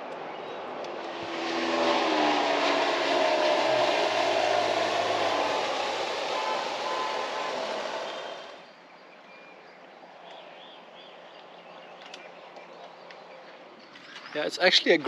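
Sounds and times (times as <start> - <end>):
vehicle passing by: 0.9 - 8.6.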